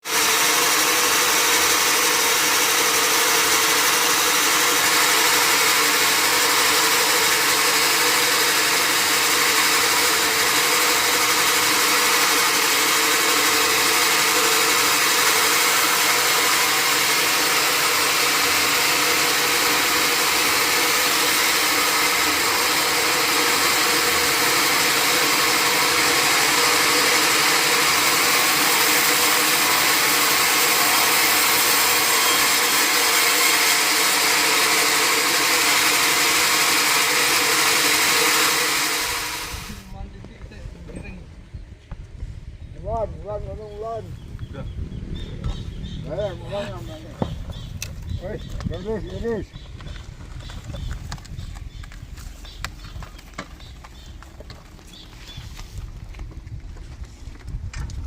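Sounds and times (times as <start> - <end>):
sawmill machinery humming: 0.0 - 40.1.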